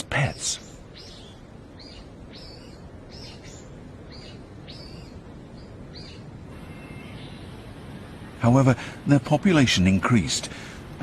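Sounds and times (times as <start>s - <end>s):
small bird chirping: 0.0s - 8.4s
outdoor background hiss: 0.0s - 11.0s.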